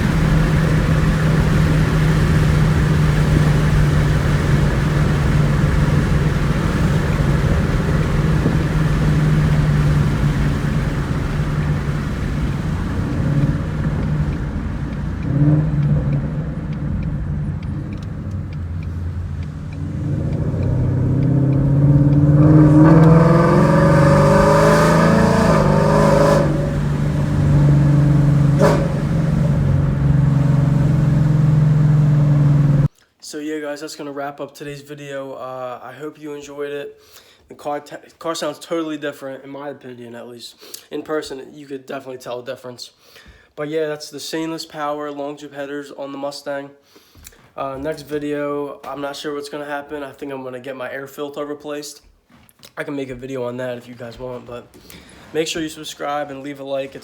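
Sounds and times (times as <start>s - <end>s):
car engine idling and revving: 0.0s - 32.9s.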